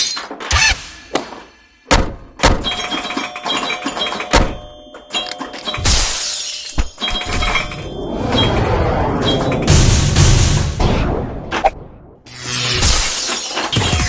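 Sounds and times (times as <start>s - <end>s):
heavy hits: 6.8s - 11.8s.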